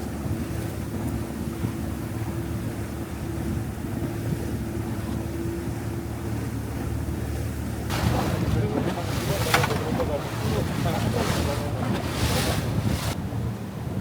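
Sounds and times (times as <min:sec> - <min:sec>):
sea wash: 0:00.0 - 0:13.9
wind buffeting microphone: 0:00.0 - 0:14.0
hissy rush: 0:07.9 - 0:13.2.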